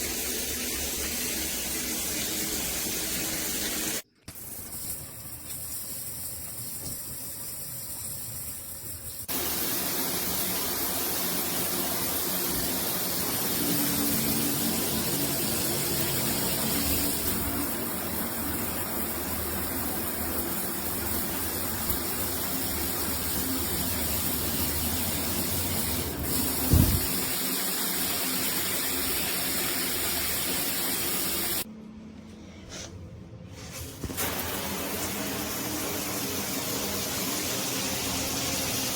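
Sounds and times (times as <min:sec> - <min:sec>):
shower water spraying: 0:00.0 - 0:31.7, 0:34.0 - 0:38.9
low thump: 0:26.7 - 0:27.1.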